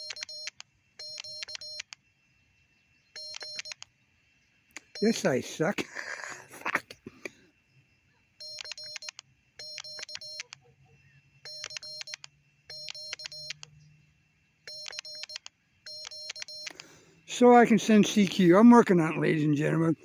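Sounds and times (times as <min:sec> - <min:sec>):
morse code beeps: 0:00.0 - 0:02.0, 0:03.2 - 0:03.8, 0:04.9 - 0:05.2, 0:08.4 - 0:10.6, 0:11.4 - 0:13.7, 0:14.7 - 0:16.9.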